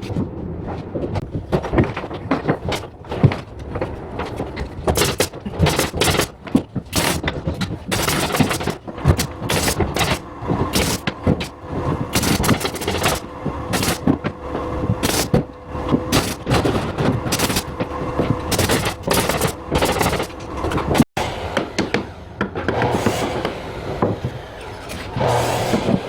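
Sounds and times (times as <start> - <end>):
carpentry knocking and scraping: 0.0 - 26.0
pneumatic nail gun firing: 4.9 - 11.5, 12.1 - 14.2, 15.0 - 15.4, 16.1 - 17.8, 18.5 - 26.0.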